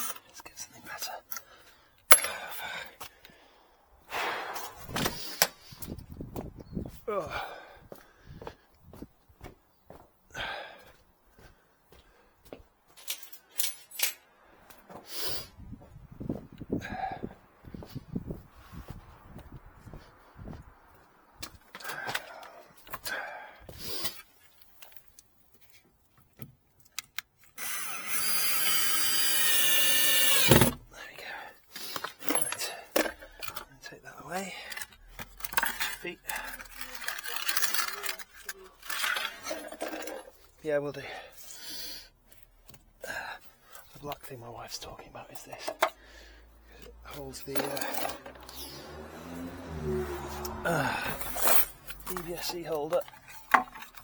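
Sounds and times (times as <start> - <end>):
tools being handled: 0.0 - 0.4, 12.9 - 14.3, 31.8 - 33.7, 34.7 - 40.6, 47.2 - 48.9, 51.0 - 54.0
low thud: 4.1 - 5.2
power drill whining: 27.5 - 30.8
rustling and clinking: 34.7 - 40.6, 47.4 - 48.7, 51.1 - 54.0.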